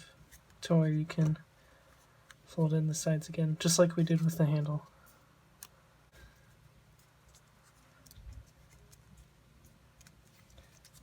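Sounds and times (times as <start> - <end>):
paper being folded and creased: 7.0 - 11.0.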